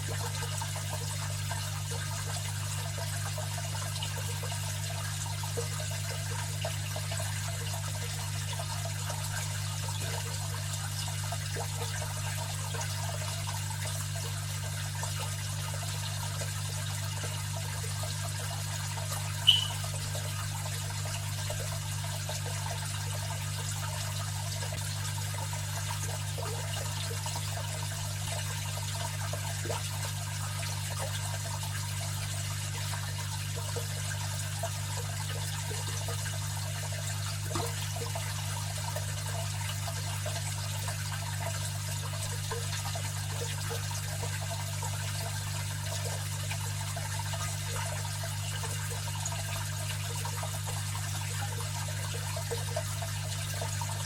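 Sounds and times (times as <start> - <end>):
filter motor hum: 0.0 - 27.8
trickling water: 0.0 - 54.0
high-pitched ping: 19.4 - 19.8.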